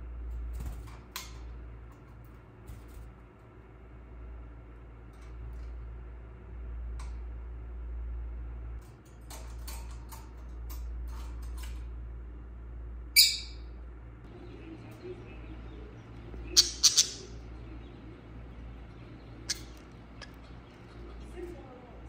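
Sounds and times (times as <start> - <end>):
steady low hum: 0.0 - 22.0
birds chirping: 13.2 - 22.0.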